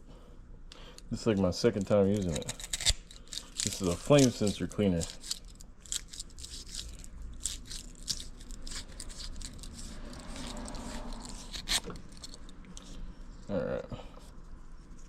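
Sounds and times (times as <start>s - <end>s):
tool scraping metal rod: 2.2s - 12.9s.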